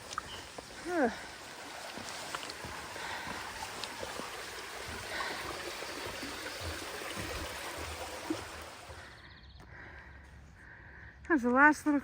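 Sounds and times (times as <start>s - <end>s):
running water rushing: 0.0s - 9.2s.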